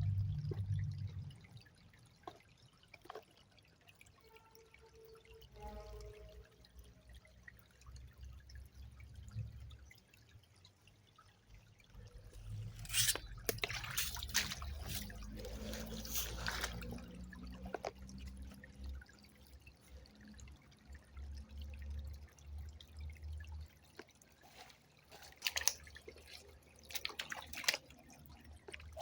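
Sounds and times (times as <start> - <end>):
low steady rumble: 0.0 - 1.7
river water trickling: 0.0 - 29.0
water splashing: 12.2 - 20.3, 23.6 - 29.0.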